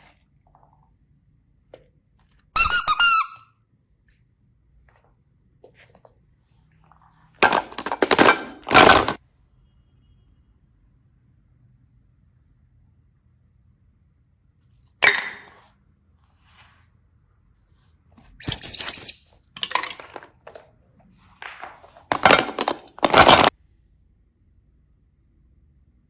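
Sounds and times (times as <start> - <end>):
small objects clattering: 6.8 - 9.2, 18.4 - 23.6.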